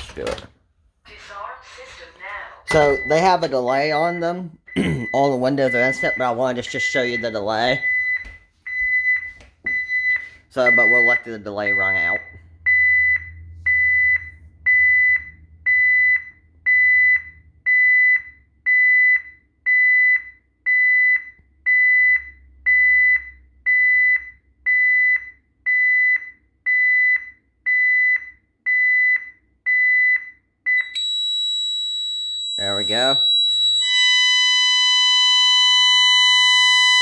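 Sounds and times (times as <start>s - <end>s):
alarm panel short high beeps: 2.7s - 3.4s, 30.8s - 37.0s.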